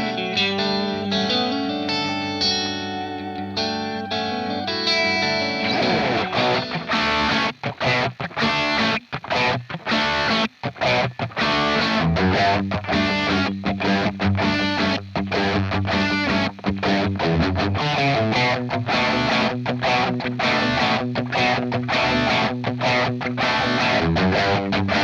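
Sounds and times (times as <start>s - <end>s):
distorted electric guitar riff: 0.0s - 25.0s.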